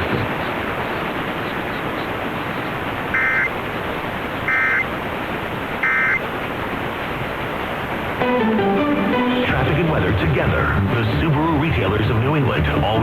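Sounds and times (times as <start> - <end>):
radio hiss: 0.0 - 13.0
digital data tone bursts: 3.1 - 3.5, 4.5 - 4.9, 5.8 - 6.2.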